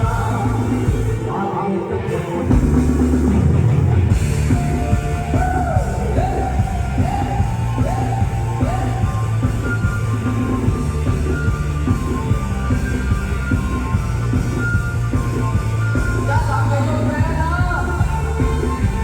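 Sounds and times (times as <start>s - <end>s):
person singing: 0.0s - 2.8s, 5.3s - 9.2s
live band music: 2.0s - 19.0s.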